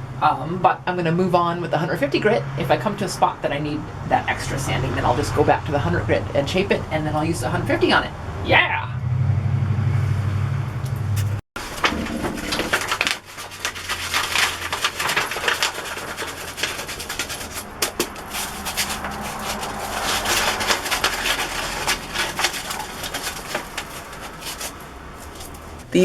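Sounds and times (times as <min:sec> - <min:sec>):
sandpaper rubbing over wood: 0:11.6 - 0:25.9.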